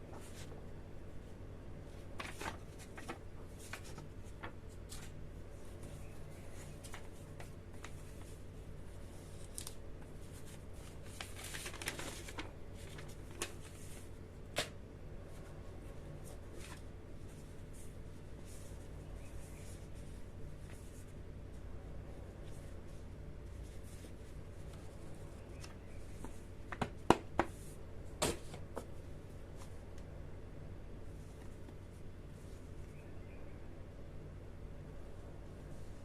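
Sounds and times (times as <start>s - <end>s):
steady low hum: 0.0s - 36.0s.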